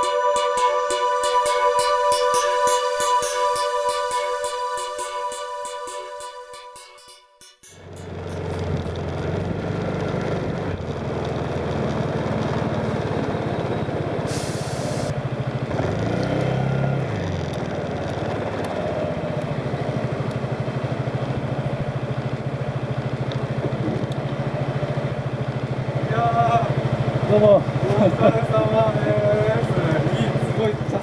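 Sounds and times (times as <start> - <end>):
motorcycle engine running: 7.6 - 31.0
short hiss: 14.3 - 15.1.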